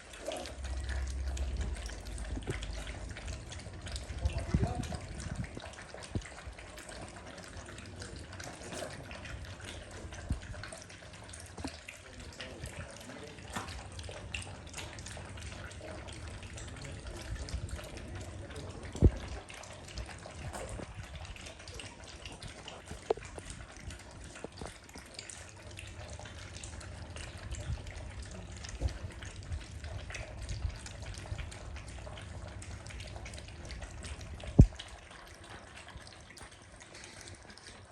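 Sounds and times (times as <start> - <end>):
puppies lapping milk: 0.0 - 37.9.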